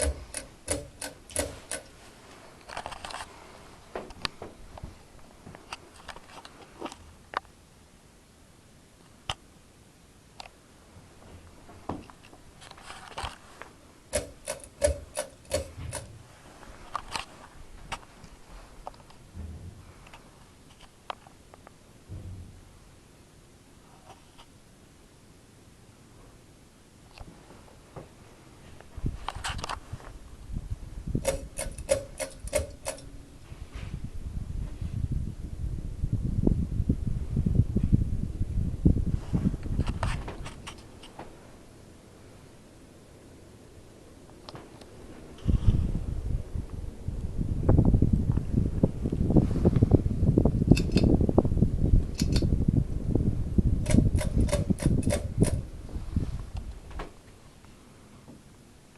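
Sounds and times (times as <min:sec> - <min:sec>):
sharp mechanical clicks: 0:00.0 - 0:02.0, 0:14.1 - 0:16.1, 0:31.2 - 0:33.1, 0:52.1 - 0:52.5, 0:53.8 - 0:55.6
ceiling fan air buffeting microphone: 0:00.0 - 0:58.9.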